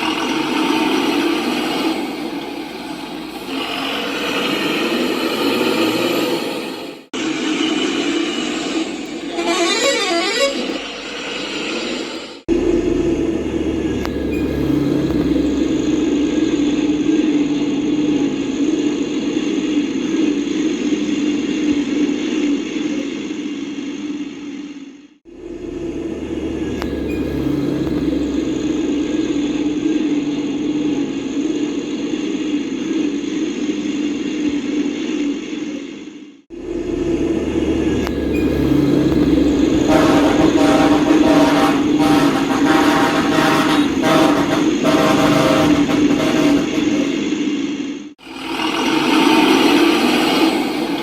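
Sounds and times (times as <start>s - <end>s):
vehicle motor droning: 0.0s - 22.3s, 25.3s - 34.2s, 36.5s - 51.0s
sustained horn-like tone: 12.5s - 19.8s, 25.3s - 32.0s, 36.5s - 47.3s.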